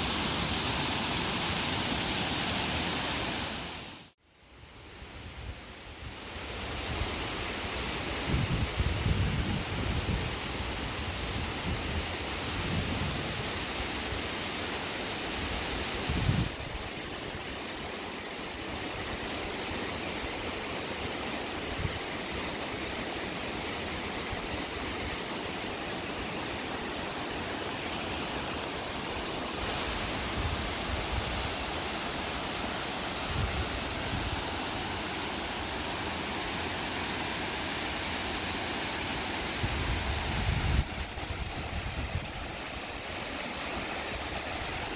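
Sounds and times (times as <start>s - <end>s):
waterfall roaring: 0.0s - 4.1s.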